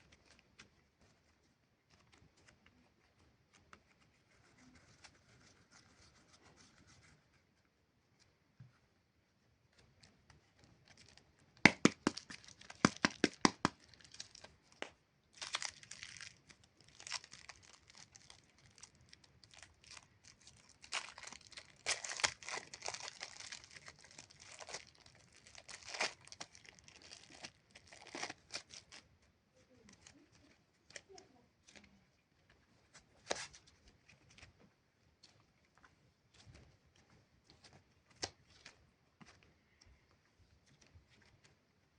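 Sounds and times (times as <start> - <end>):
packaging tearing and crinkling: 10.8 - 14.5, 15.4 - 29.0.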